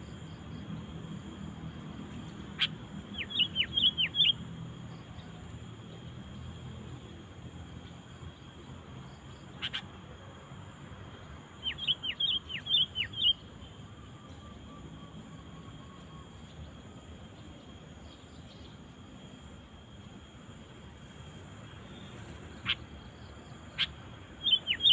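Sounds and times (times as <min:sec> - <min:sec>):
bird calling whistled notes: 0:02.6 - 0:04.4, 0:11.6 - 0:13.4, 0:23.8 - 0:24.9.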